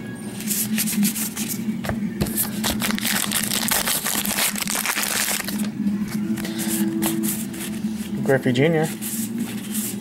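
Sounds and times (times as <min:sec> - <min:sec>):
card pack wrapper crinkling and tearing: 0:02.4 - 0:06.5.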